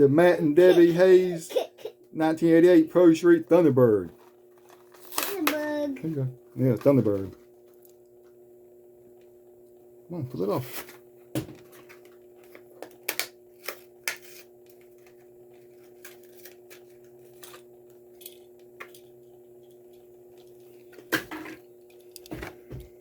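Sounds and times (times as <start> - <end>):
steady low hum: 0.0 - 23.0
cardboard and plastic packaging tearing: 4.2 - 5.8, 11.8 - 17.6.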